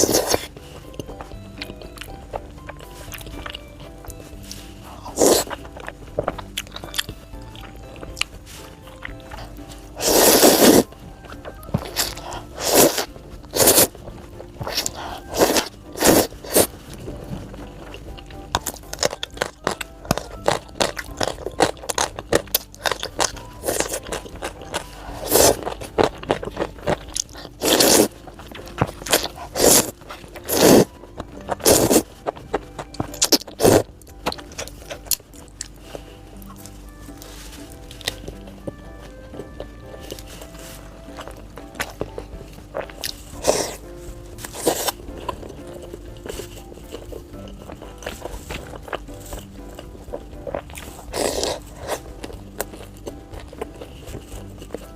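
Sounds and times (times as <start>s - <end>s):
background music: 0.0s - 54.9s
crunchy bites and chewing: 0.0s - 54.9s.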